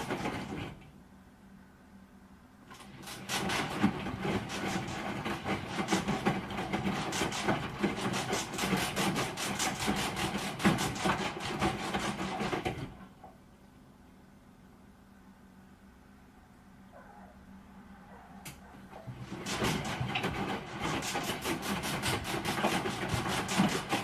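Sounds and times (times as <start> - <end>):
washing machine knocking clatter: 0.0 - 0.8, 2.7 - 13.1, 18.9 - 24.0
washing machine hum: 0.0 - 16.0, 16.9 - 24.0.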